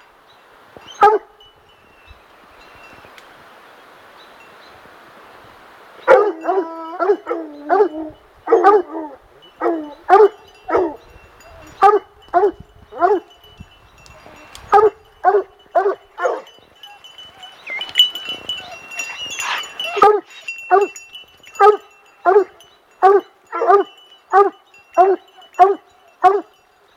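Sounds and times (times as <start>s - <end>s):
hounds baying: 6.1s - 13.6s, 14.2s - 26.6s.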